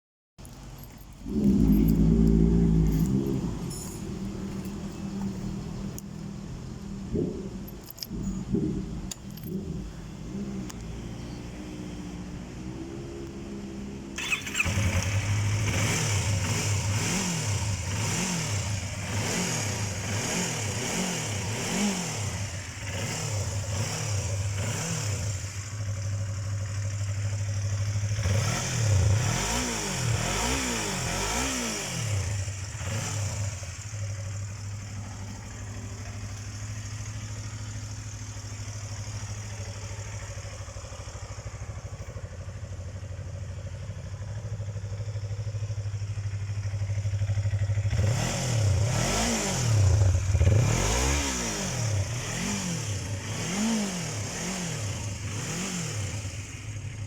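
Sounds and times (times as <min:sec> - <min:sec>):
motorcycle engine idling: 0:00.4 - 0:12.8, 0:14.2 - 0:19.1, 0:22.3 - 0:29.1, 0:32.2 - 0:48.8, 0:56.0 - 0:57.0
motorcycle engine revving: 0:00.5 - 0:57.0.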